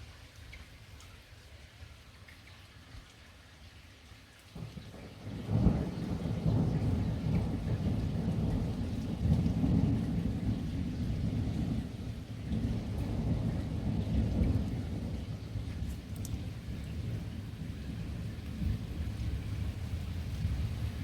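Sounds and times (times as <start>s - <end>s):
steady rain: 0.0s - 21.0s
thunder rumbling: 4.6s - 21.0s.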